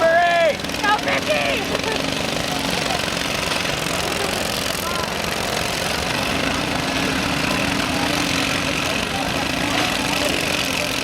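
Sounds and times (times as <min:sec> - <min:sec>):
people shouting: 0:00.0 - 0:01.7
car engines droning: 0:00.0 - 0:11.0
crowd chatter: 0:00.0 - 0:11.0.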